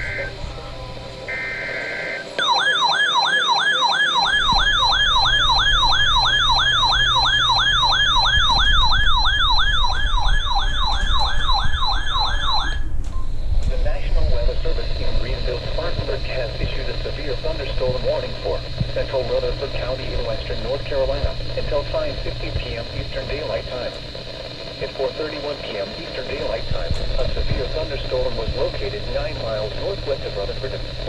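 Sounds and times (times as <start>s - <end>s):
siren-like alert tone: 0.0s - 0.4s, 1.3s - 13.0s
buzzy data burst: 0.0s - 0.5s, 1.3s - 31.0s
low hum: 0.0s - 2.5s, 4.3s - 31.0s.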